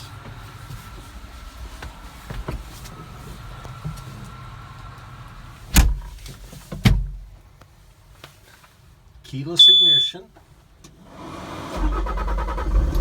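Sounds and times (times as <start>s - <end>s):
vehicle door thump: 5.7s - 6.2s, 6.8s - 7.2s.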